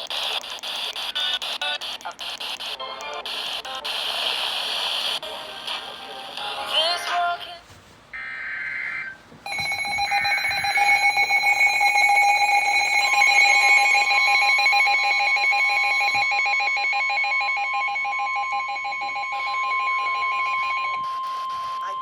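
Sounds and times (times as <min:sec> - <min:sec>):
higher electronic tone: 0:08.2 - 0:18.7
steady electronic alert tone: 0:08.8 - 0:20.9.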